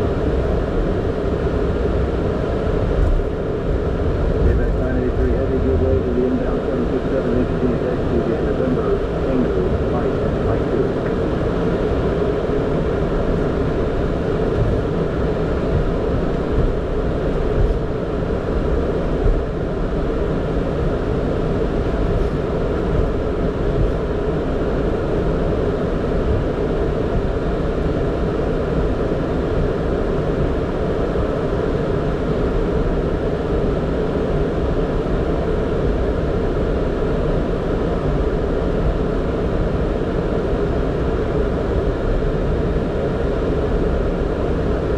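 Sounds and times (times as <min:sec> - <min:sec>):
cockpit rumble and hum: 0:00.0 - 0:44.9
aircraft engines idling: 0:01.0 - 0:27.2.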